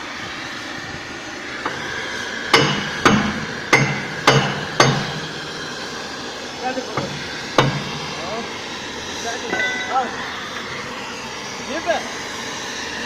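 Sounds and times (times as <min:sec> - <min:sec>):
hammer striking steel: 0:02.5 - 0:05.2, 0:07.0 - 0:07.9, 0:09.5 - 0:10.0.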